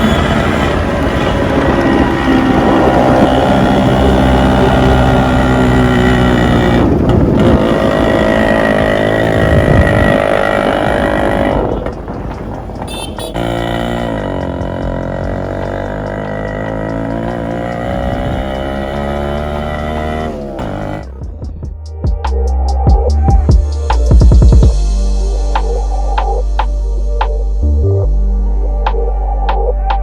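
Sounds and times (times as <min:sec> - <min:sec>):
motorcycle engine revving: 0:00.0 - 0:21.3.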